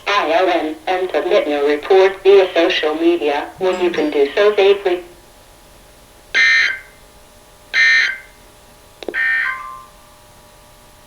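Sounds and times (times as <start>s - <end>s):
harsh buzzy data chirps: 3.5s - 5.2s.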